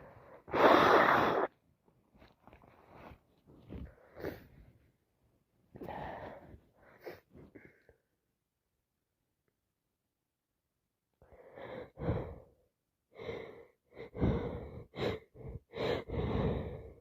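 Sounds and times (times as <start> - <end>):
congested person breathing hard: 3.7 - 4.8, 5.8 - 8.0, 11.2 - 17.0.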